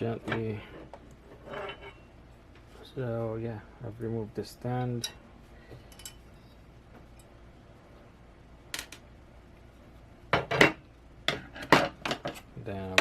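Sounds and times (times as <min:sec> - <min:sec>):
parts clattering together: 0:04.8 - 0:07.3, 0:10.3 - 0:13.0.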